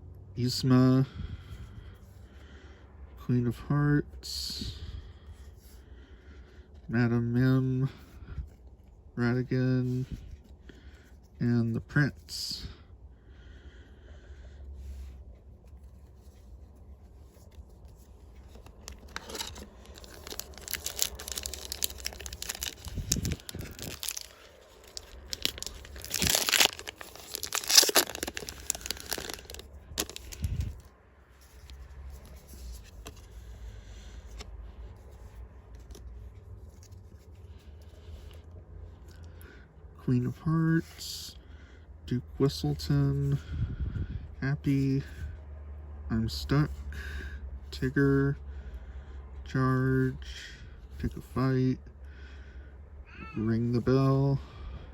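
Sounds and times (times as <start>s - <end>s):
plastic wrapper tearing and crinkling: 18.4s - 30.8s.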